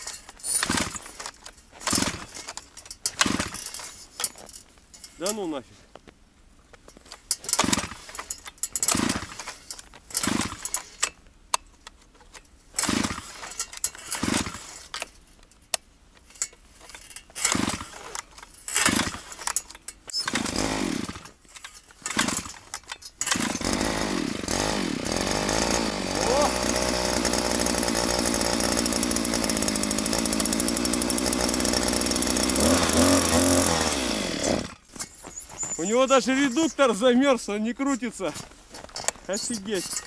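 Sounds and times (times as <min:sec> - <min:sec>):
pull-start cord pulls: 0:00.0 - 0:04.4, 0:17.1 - 0:35.1
small two-stroke engine running: 0:20.2 - 0:21.2, 0:23.3 - 0:34.8.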